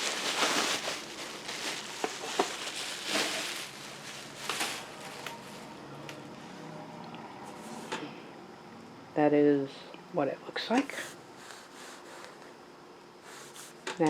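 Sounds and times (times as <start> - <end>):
bubble wrap rustling and crackling: 0.0 - 5.9.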